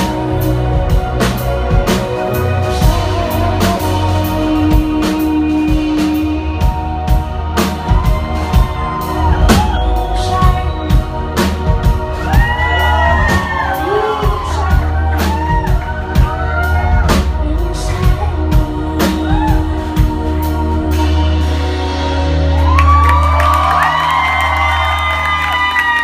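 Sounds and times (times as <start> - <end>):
deep bass: 0.0 - 26.0
drum kit: 0.0 - 26.0
woman singing: 2.6 - 7.2, 9.8 - 11.6, 13.2 - 21.9.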